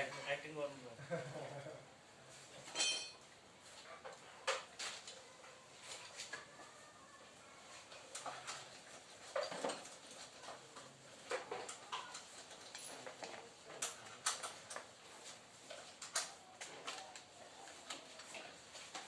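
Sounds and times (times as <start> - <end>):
tools clicking and knocking on metal: 8.0 - 17.0.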